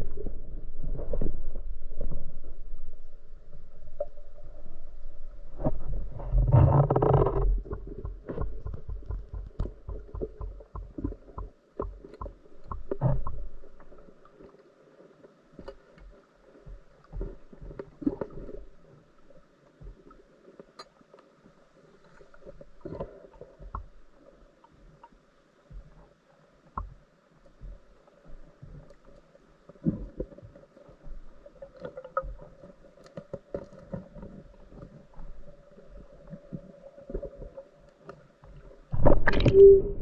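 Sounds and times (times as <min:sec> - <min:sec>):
underwater rushing with low rumble: 0:00.0 - 0:40.0
underwater sharp clicks and knocks: 0:05.5 - 0:14.6, 0:15.6 - 0:21.3, 0:22.2 - 0:26.1, 0:26.7 - 0:40.0.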